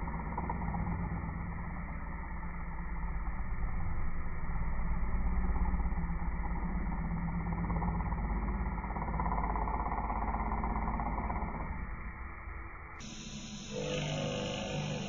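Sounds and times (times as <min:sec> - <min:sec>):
machine mechanical rumble: 0:00.0 - 0:15.0
high bright machine noise: 0:13.0 - 0:15.0.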